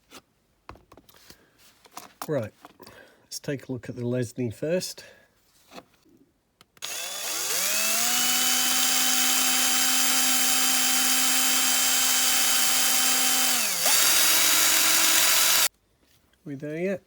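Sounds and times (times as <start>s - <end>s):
small electric drill drilling: 6.8s - 15.7s.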